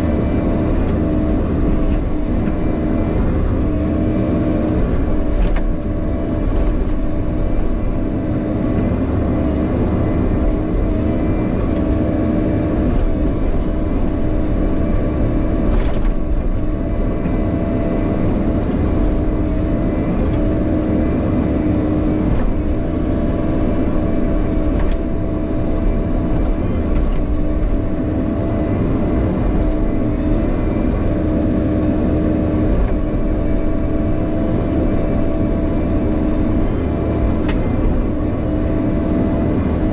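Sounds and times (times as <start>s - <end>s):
excavator diesel engine: 0.0s - 39.9s.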